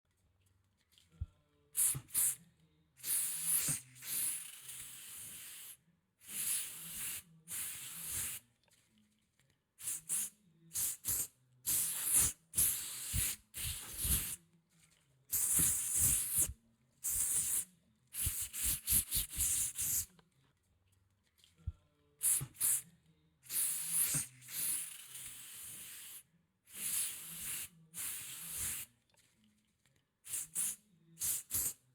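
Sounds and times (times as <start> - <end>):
aerosol spray can hissing: 1.8 - 2.4, 3.0 - 8.4, 9.8 - 14.4, 15.3 - 20.1, 22.2 - 22.8, 23.5 - 28.9, 30.3 - 31.8.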